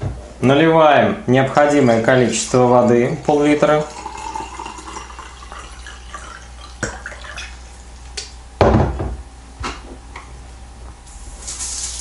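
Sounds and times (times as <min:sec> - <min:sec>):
water pouring into jar: 0:03.2 - 0:07.6.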